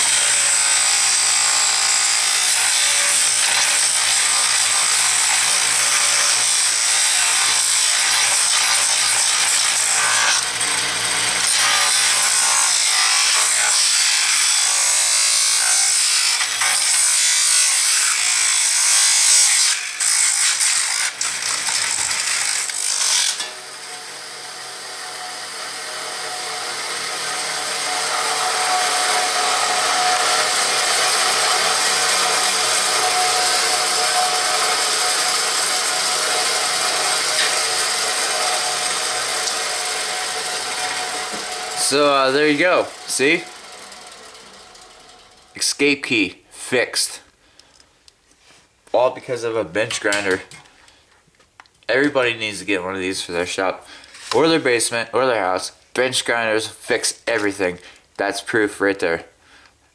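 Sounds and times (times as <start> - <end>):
bench grinder grinding plastic: 0.0 - 45.7
grinder running steadily: 0.0 - 45.7.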